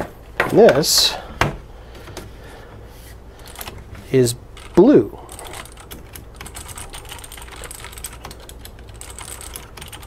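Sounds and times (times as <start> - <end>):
mechanical keyboard typing: 4.6 - 10.0.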